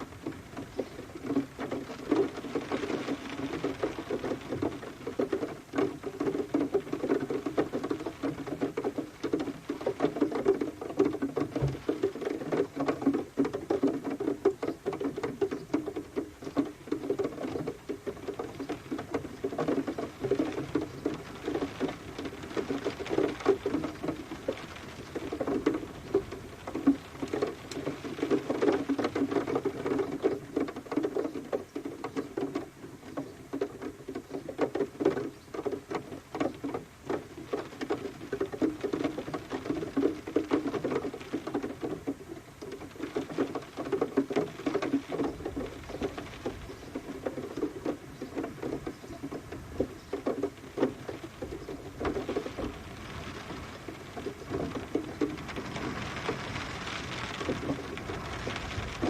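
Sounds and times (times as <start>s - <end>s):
rain pattering: 0.0s - 59.0s.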